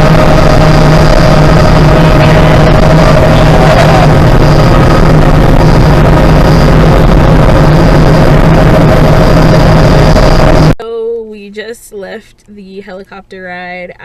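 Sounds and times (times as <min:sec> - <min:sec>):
helicopter engine and rotor noise: 0:00.0 - 0:10.8.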